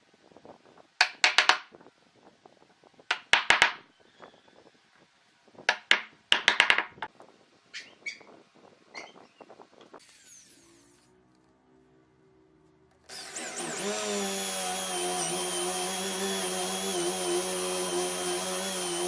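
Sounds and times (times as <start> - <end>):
sharp knocks or taps: 5.7 - 7.1.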